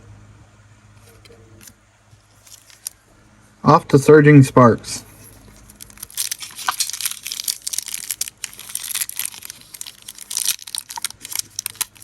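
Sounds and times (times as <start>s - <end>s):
foil pack tearing and crinkling: 2.4s - 3.0s, 5.3s - 12.0s.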